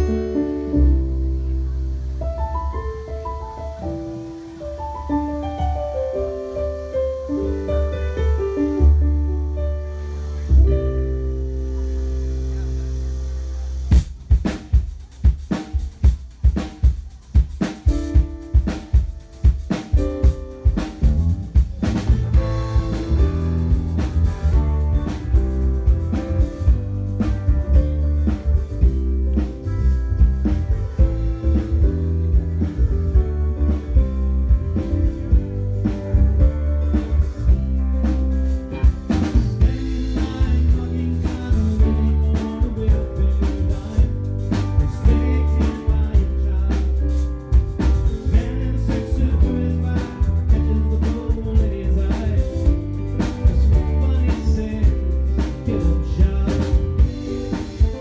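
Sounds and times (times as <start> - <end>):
bass line: 0.0 - 58.0
rock band playing: 13.9 - 58.0
snare and kick drum hits: 14.0 - 29.0.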